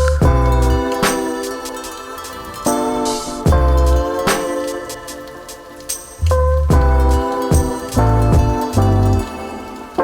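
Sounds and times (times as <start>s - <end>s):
deep bass line: 0.0s - 0.9s, 3.5s - 4.1s, 6.2s - 9.2s
mellow instrumental music: 0.0s - 10.0s.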